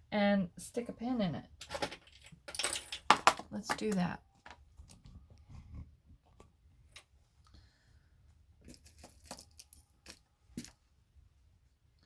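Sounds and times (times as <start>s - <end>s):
pins clicking and clinking: 1.6s - 4.6s.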